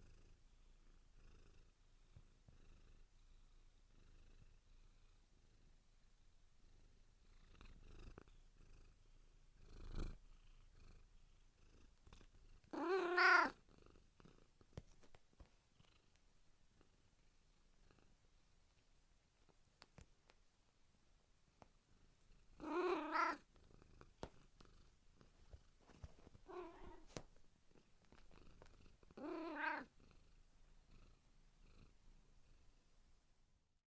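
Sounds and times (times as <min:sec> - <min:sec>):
cat purring: 0:00.0 - 0:18.8, 0:21.6 - 0:32.8
cat meowing: 0:12.8 - 0:13.6, 0:22.6 - 0:23.4, 0:26.5 - 0:27.1, 0:29.2 - 0:29.9
faint clicks: 0:18.8 - 0:20.4.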